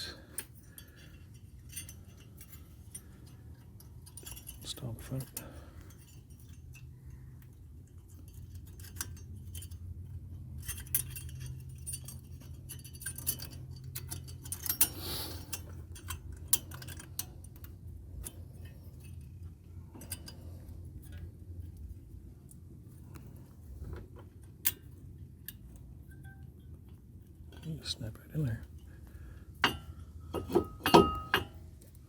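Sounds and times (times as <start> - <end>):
metal brake clips clicking: 10.6 - 19.3, 24.6 - 26.4, 28.7 - 32.0.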